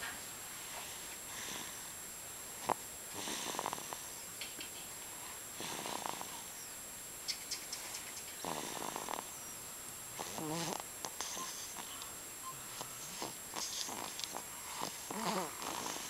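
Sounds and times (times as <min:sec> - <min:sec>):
rattling snores: 0:02.6 - 0:04.1, 0:05.6 - 0:06.5, 0:08.4 - 0:09.4, 0:10.2 - 0:11.9, 0:13.0 - 0:16.0.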